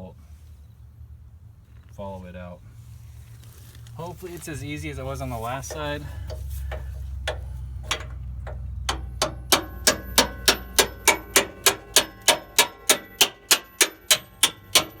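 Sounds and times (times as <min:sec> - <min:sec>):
hammer striking steel bolt: 0:05.7 - 0:15.0.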